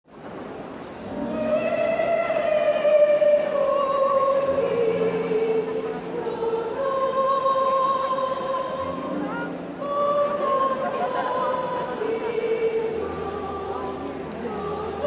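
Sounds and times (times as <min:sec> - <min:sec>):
choir singing in harmony: 0:01.0 - 0:15.0.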